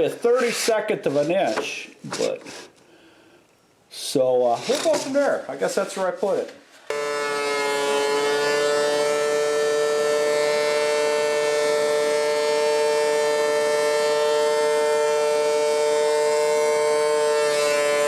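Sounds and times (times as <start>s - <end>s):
thickness planer whine: 6.9s - 18.0s.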